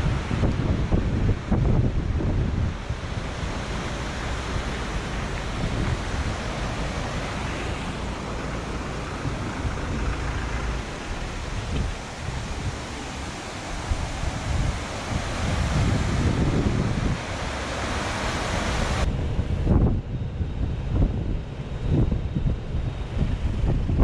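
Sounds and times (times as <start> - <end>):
river rushing: 0.0 - 19.1
wind buffeting microphone: 0.0 - 24.0.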